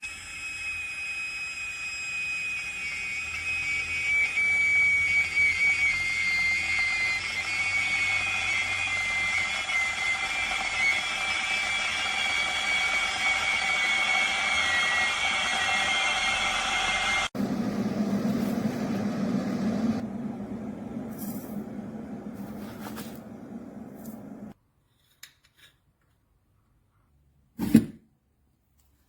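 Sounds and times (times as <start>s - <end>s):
high whistling tone: 0.0s - 17.3s
kettle heating water hiss: 6.6s - 24.6s.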